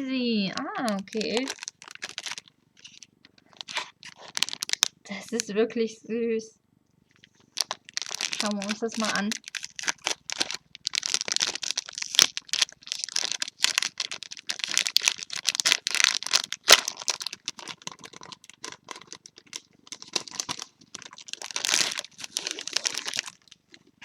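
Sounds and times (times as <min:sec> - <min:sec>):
plastic packaging crinkling: 0:00.0 - 0:05.6, 0:07.0 - 0:24.0.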